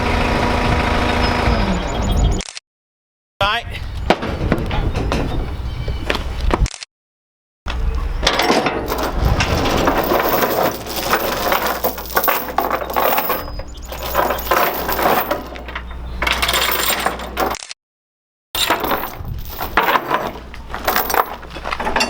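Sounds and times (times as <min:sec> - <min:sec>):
skid steer engine drone: 0:00.0 - 0:02.4
metallic clanking and rattling: 0:08.2 - 0:17.6, 0:18.6 - 0:22.0.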